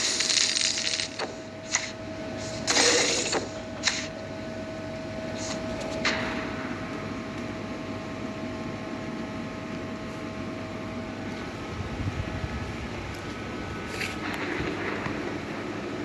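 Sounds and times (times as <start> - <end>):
steady mechanical hum: 0.0 - 16.0.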